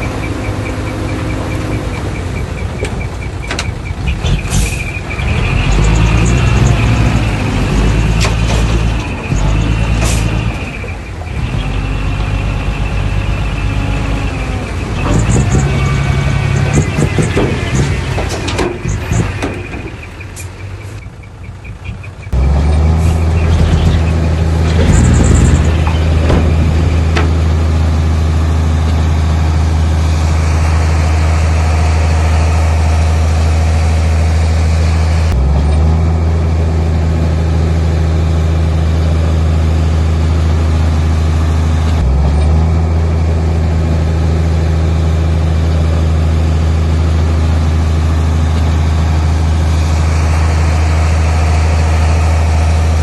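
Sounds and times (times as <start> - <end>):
heavy diesel engine droning: 0.0 - 53.0.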